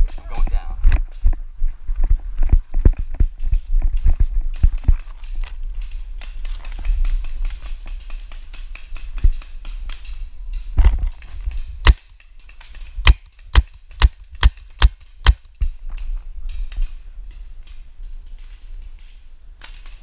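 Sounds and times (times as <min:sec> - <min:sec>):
paintball markers firing: 0:11.8 - 0:12.2, 0:13.0 - 0:15.6.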